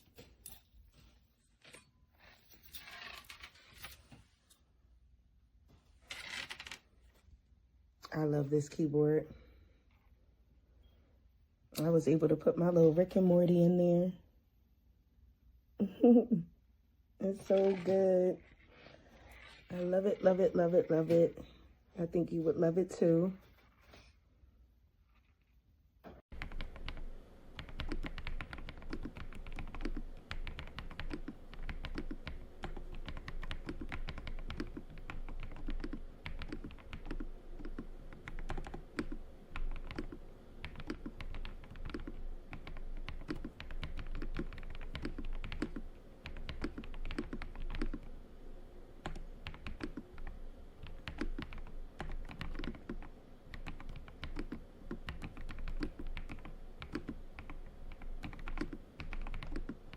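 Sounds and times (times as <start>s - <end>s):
fast typing on mechanical keyboard: 26.3s - 48.1s, 49.0s - 59.9s.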